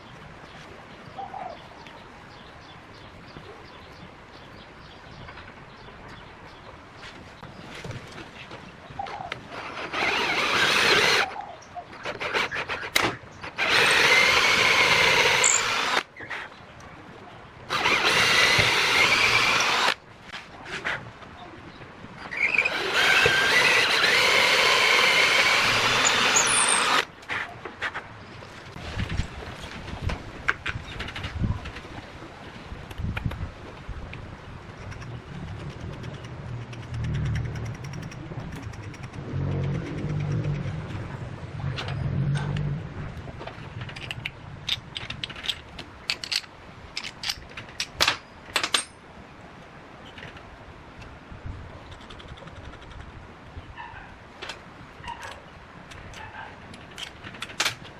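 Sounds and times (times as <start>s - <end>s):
electric drill whining: 9.9s - 11.2s, 13.6s - 16.0s, 17.7s - 20.0s, 22.4s - 27.0s
metallic clicks of small parts: 34.8s - 40.7s, 43.8s - 49.0s, 55.2s - 57.9s.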